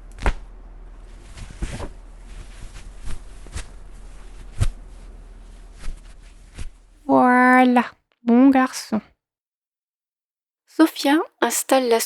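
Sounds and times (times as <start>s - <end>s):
fabric rustling: 0.0s - 7.1s
steady low hum: 0.0s - 7.1s.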